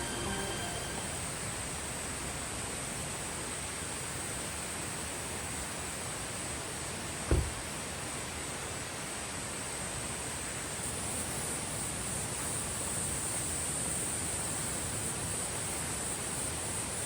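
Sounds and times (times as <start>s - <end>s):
dull thump: 7.3s - 7.7s.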